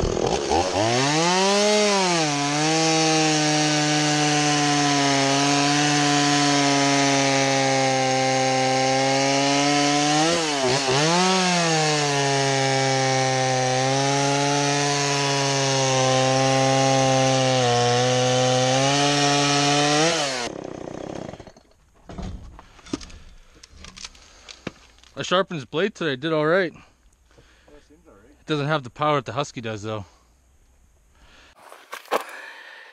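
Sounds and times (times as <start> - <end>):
chainsaw cutting wood: 0.0 - 21.7.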